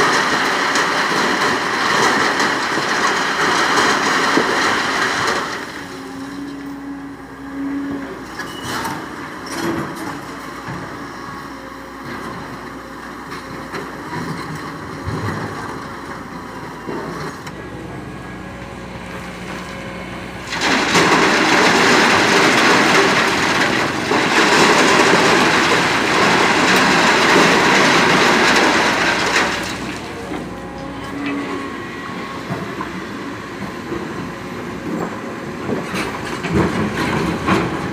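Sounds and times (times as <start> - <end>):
heavy machinery running: 0.0 - 37.9
rush of sand and stones: 20.5 - 30.3.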